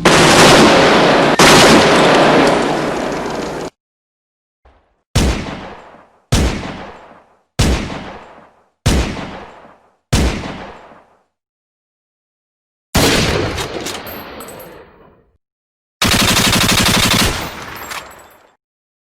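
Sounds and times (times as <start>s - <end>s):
gunshots: 0.0s - 3.7s, 5.2s - 11.2s, 13.0s - 14.2s, 16.0s - 18.3s.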